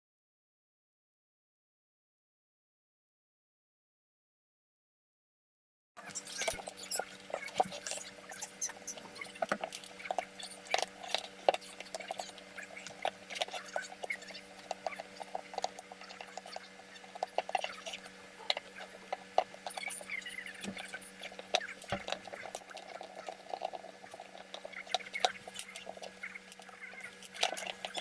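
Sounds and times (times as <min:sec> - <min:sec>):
faint steady hum: 0:06.0 - 0:28.0.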